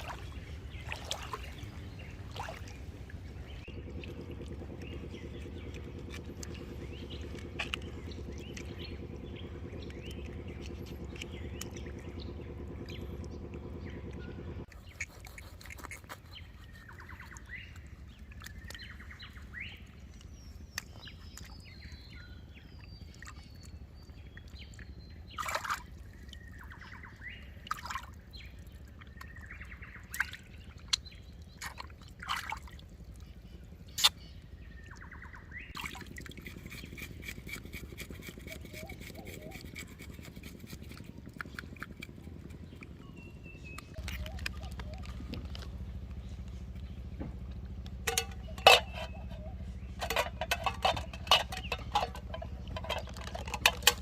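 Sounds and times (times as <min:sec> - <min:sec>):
birds chirping and whistling: 0:00.0 - 0:25.4, 0:33.8 - 0:54.0
steady low hum: 0:00.0 - 0:54.0
sharp clicks and knocks: 0:47.2 - 0:54.0.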